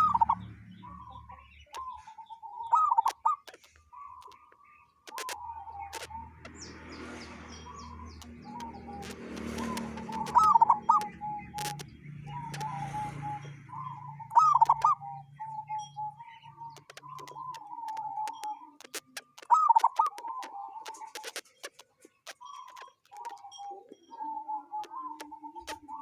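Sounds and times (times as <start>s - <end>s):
dove cooing: 0.0s - 26.0s.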